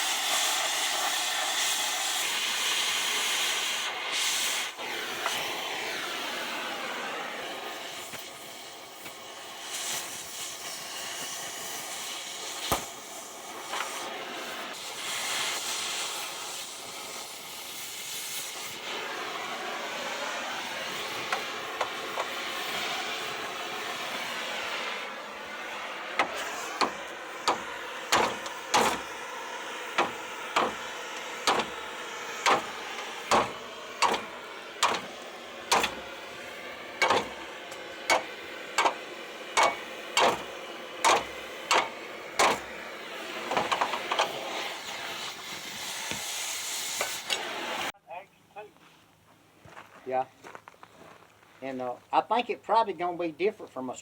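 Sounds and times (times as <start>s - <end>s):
cutting torch hissing: 0.0s - 48.0s
hammer blows on steel: 26.2s - 29.2s, 29.9s - 36.4s, 37.0s - 42.8s.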